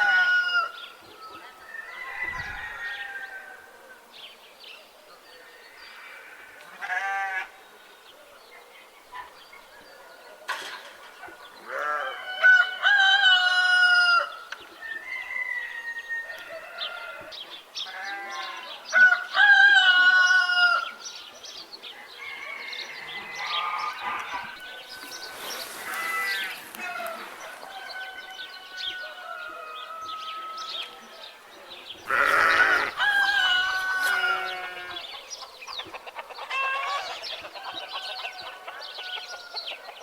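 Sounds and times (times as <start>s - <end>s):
rooster crowing: 0.0s - 0.8s, 1.4s - 3.7s, 12.0s - 17.3s, 22.0s - 30.9s, 32.1s - 35.1s
chickens clucking: 32.1s - 40.0s.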